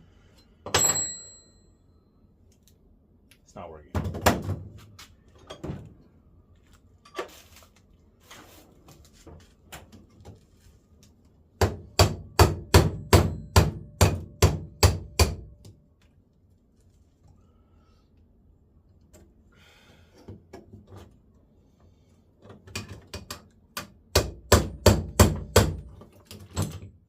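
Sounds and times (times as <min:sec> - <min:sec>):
hammer striking punch on metal: 0:11.6 - 0:15.6, 0:23.8 - 0:25.8.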